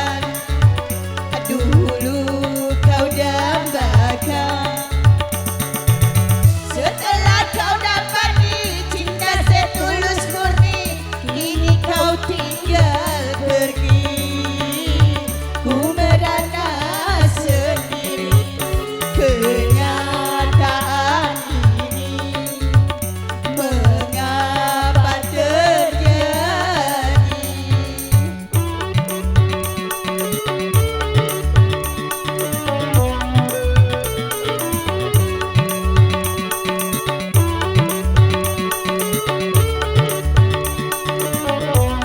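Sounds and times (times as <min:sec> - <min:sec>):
hand-drum beat: 0:00.0 - 0:42.0
sliding pitch melody: 0:27.4 - 0:42.0.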